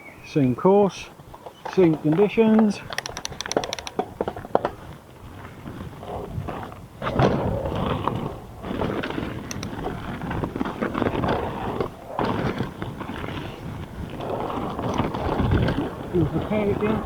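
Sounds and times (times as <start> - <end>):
bike clattering over bumps: 1.3 - 17.0
bike tyres crunching over dirt: 3.9 - 17.0.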